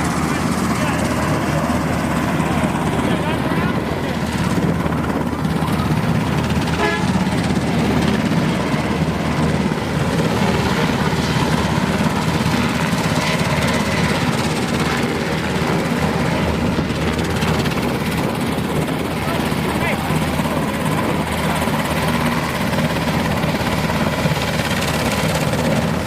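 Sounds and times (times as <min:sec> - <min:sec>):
helicopter engine and rotor drone: 0:00.0 - 0:26.0.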